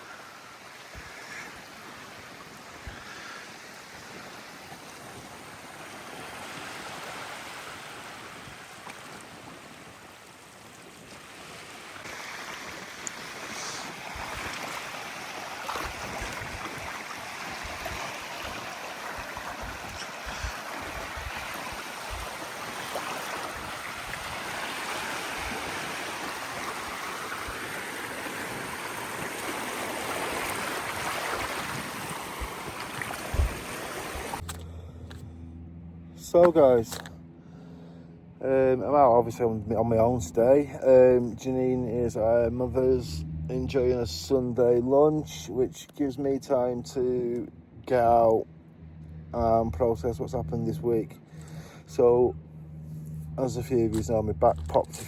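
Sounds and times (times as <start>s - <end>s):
sea surf washing on beach: 0.0s - 34.4s
wind buffeting microphone: 15.7s - 27.8s, 28.4s - 34.4s.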